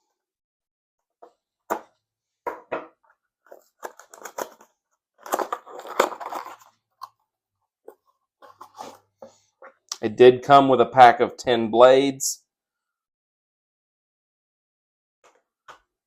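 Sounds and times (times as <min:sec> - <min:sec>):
packaging crackling and tearing: 0:03.5 - 0:06.8
packaging snapping and clicking: 0:03.5 - 0:07.2.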